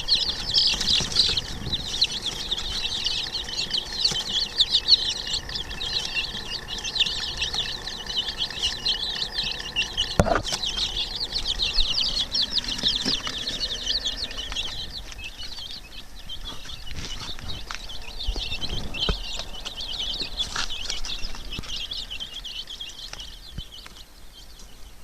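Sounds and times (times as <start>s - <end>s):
chicks peeping: 0.0s - 25.0s
sharp knock: 10.2s - 10.6s.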